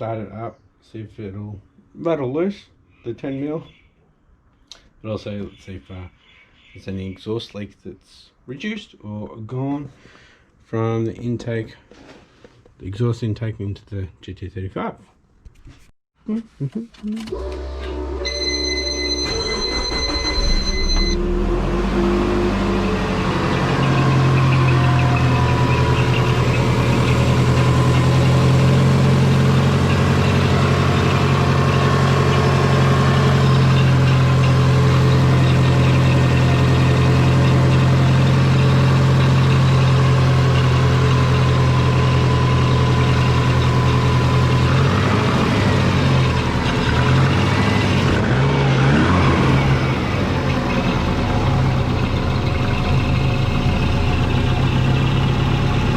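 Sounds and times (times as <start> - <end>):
car engine starting and idling: 17.2 - 55.9.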